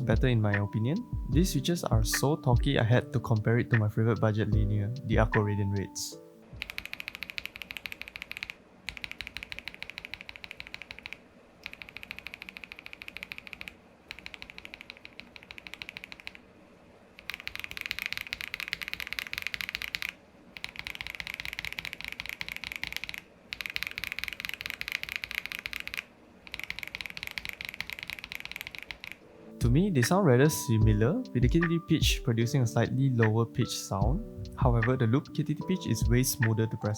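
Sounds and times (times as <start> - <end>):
mechanical keyboard typing: 6.6 - 16.4, 17.2 - 29.2.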